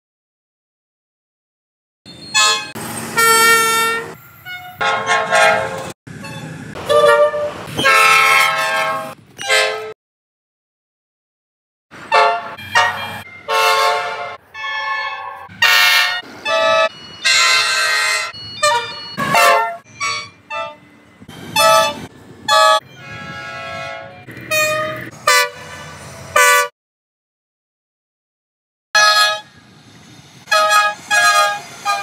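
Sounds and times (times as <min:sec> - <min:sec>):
train horn blasts: 0:02.2 - 0:10.0, 0:12.1 - 0:26.7, 0:29.0 - 0:29.7, 0:30.4 - 0:32.0.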